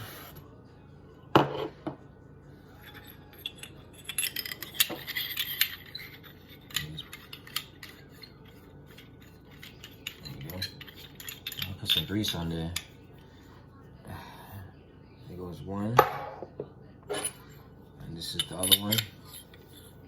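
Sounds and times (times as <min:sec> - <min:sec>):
metal parts rubbing: 0:02.7 - 0:12.9, 0:17.1 - 0:17.5, 0:18.2 - 0:20.0.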